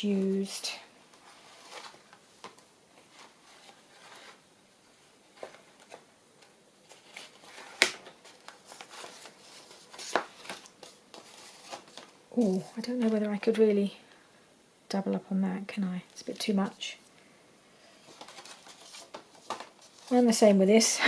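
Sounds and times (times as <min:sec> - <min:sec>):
paper rustling and shuffling: 0:00.0 - 0:04.4, 0:05.3 - 0:13.3, 0:18.0 - 0:20.5.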